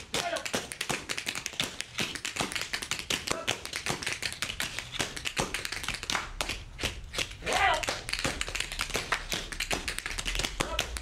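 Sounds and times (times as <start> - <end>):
tap dance taps on stage floor: 0.0 - 11.0.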